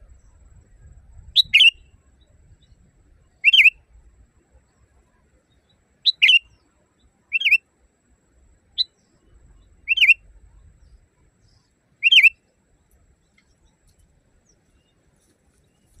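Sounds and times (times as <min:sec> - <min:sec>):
bulbul chirping calls: 0:00.1 - 0:03.9, 0:05.6 - 0:06.7, 0:07.3 - 0:07.6, 0:08.7 - 0:12.4.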